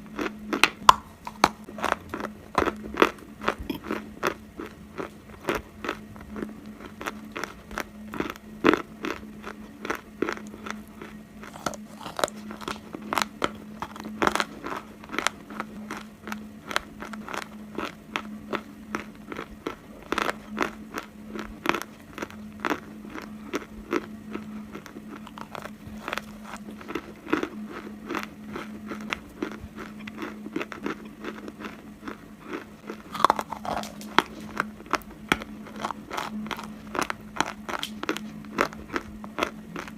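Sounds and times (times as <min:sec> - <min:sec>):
clay crunched between teeth: 0:32.9 - 0:39.9.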